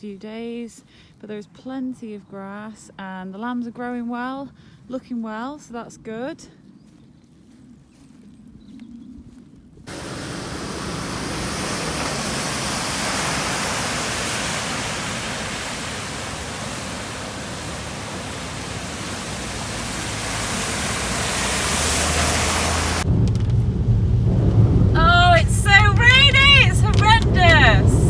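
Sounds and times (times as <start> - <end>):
low steady hum: 9.9 - 28.0
water rushing: 9.9 - 28.0.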